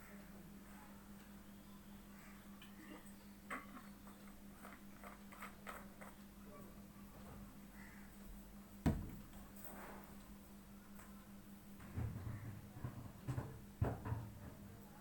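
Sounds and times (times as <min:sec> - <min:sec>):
low electrical hum: 0:00.0 - 0:15.0
sharp knock: 0:08.9 - 0:09.3.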